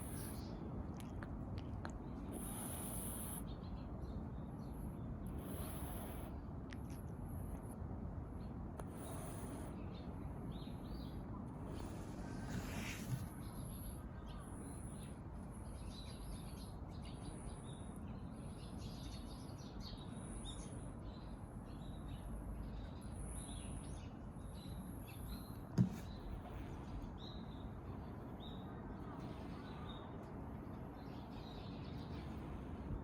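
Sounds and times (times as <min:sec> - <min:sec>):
low outdoor rumble: 0:20.0 - 0:33.0
sharp knock: 0:25.8 - 0:26.1.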